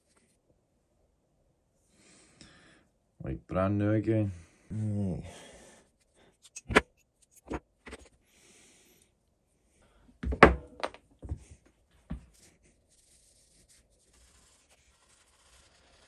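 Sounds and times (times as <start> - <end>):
faint rubbing: 12.3 - 16.0.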